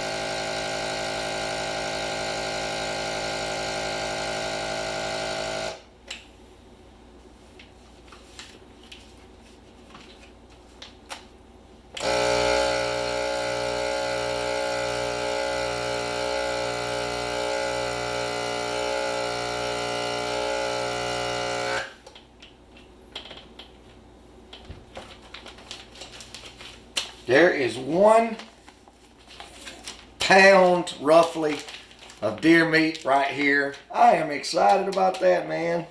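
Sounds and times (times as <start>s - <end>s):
vacuum sealer pump buzzing: 0.0s - 5.9s, 12.0s - 22.0s.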